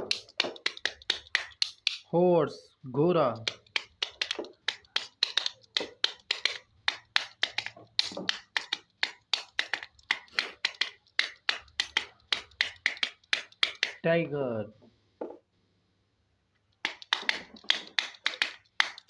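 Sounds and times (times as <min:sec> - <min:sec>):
rhythmic sharp clicks: 0:00.0 - 0:02.1, 0:03.4 - 0:14.0, 0:16.7 - 0:19.0.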